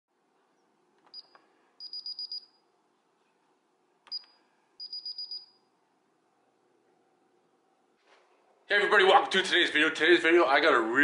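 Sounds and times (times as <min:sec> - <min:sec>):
alarm keypad beeps: 0:01.2 - 0:02.6, 0:04.1 - 0:05.6.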